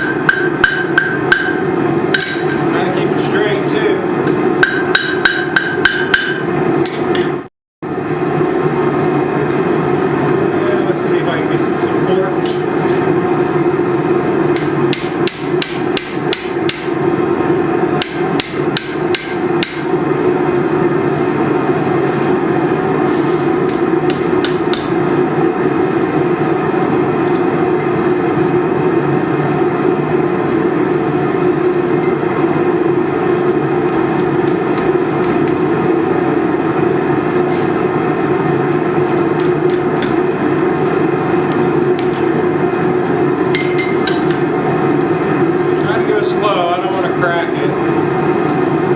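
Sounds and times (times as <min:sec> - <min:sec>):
hammer striking steel on anvil: 0:00.0 - 0:02.7, 0:04.2 - 0:07.4, 0:12.4 - 0:12.7, 0:14.6 - 0:17.0, 0:18.0 - 0:19.9, 0:23.7 - 0:25.0, 0:43.5 - 0:44.5
workshop machine humming: 0:00.0 - 0:48.9.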